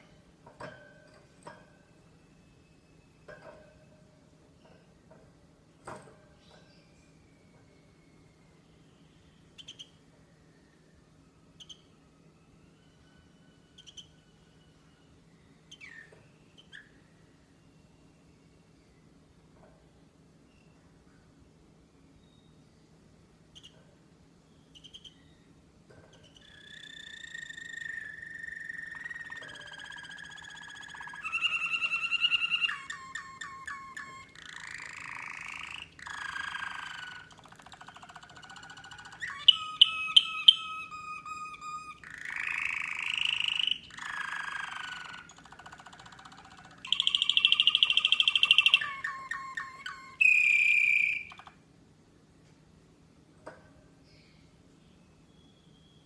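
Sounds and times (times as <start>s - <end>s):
canary singing: 9.1s - 10.0s, 11.6s - 12.0s, 12.9s - 17.0s, 24.6s - 25.5s, 26.1s - 51.6s.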